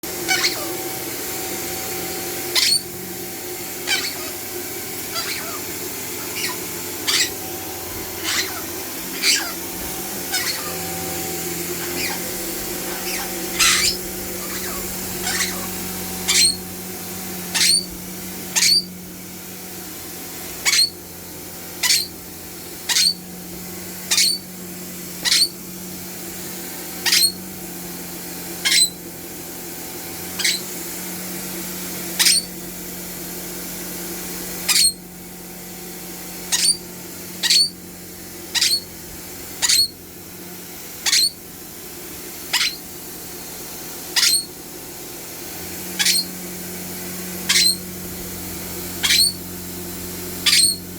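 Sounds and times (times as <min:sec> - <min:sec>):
vacuum cleaner running: 0:00.0 - 0:50.9
pet squeaking: 0:00.1 - 0:16.8, 0:17.4 - 0:18.9, 0:20.6 - 0:21.0, 0:21.7 - 0:22.2, 0:22.8 - 0:23.4, 0:24.0 - 0:24.5, 0:25.2 - 0:25.6, 0:26.9 - 0:27.4, 0:28.6 - 0:29.1, 0:30.3 - 0:30.8, 0:32.2 - 0:32.6, 0:34.7 - 0:35.0, 0:36.5 - 0:37.8, 0:38.5 - 0:38.9, 0:39.5 - 0:40.1, 0:41.0 - 0:41.4, 0:42.5 - 0:43.0, 0:44.2 - 0:44.6, 0:45.9 - 0:46.4, 0:47.4 - 0:47.9, 0:48.9 - 0:49.5, 0:50.4 - 0:50.9.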